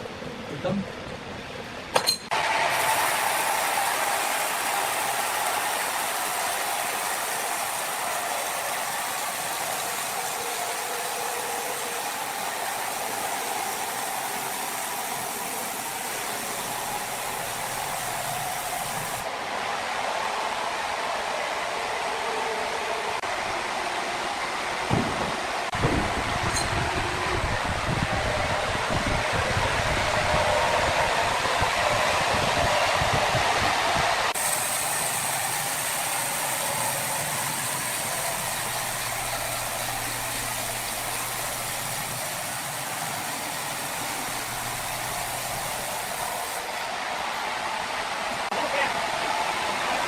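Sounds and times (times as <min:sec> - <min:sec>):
sawmill saw hissing: 0:02.3 - 0:19.3, 0:34.3 - 0:47.4.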